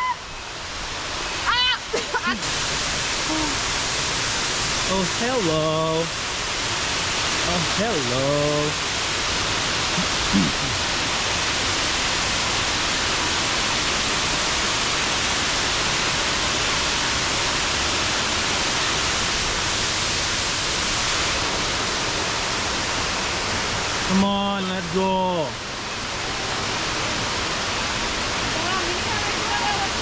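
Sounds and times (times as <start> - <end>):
waterfall pouring: 0.6 - 30.0
person's voice: 4.8 - 6.2, 7.4 - 8.8, 10.0 - 10.8, 24.0 - 25.6, 28.5 - 30.0.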